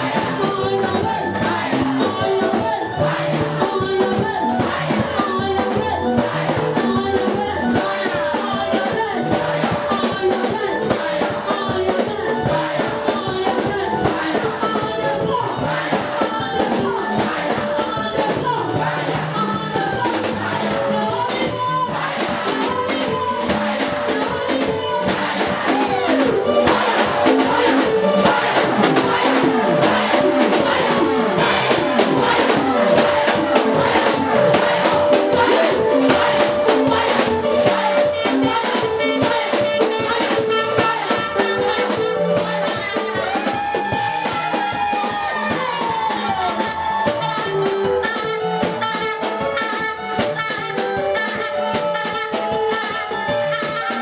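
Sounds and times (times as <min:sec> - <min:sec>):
live band with drums: 0:00.0 - 0:54.0
person singing: 0:00.0 - 0:54.0.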